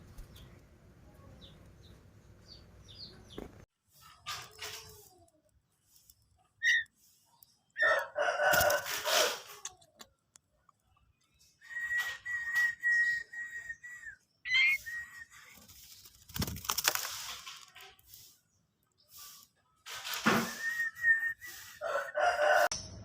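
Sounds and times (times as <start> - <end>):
bird calls: 6.4 - 10.0, 10.8 - 16.0
rooster crowing: 7.8 - 9.4, 21.8 - 22.7.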